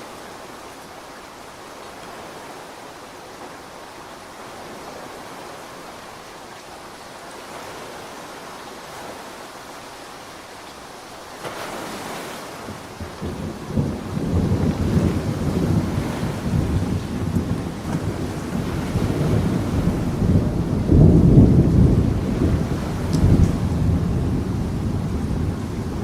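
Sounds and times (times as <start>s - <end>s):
steady rain: 0.0s - 26.0s
thunder crack and rumble: 12.6s - 26.0s.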